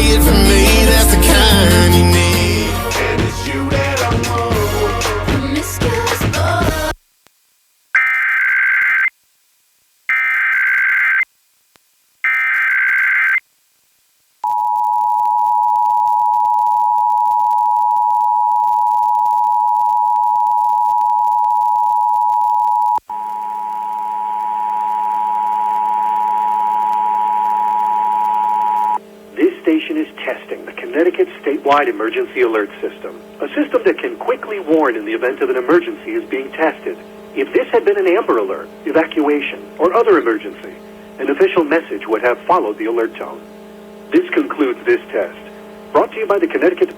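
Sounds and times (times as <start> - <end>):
two-tone attention signal: 0.0 - 6.2
digital header bursts: 0.0 - 6.7, 29.4 - 46.9
low hum and hiss: 0.0 - 7.9, 28.7 - 46.9.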